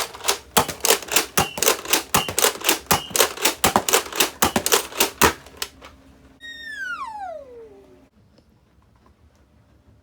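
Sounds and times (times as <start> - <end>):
toy blaster firing clicks: 0.0 - 5.8.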